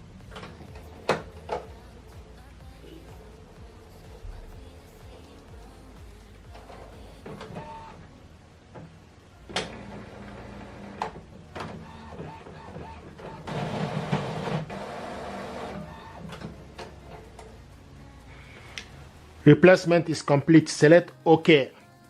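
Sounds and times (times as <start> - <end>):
printer mechanism hum: 0.0 - 8.1, 8.7 - 17.7
printer whirring: 6.6 - 8.0, 9.5 - 17.5.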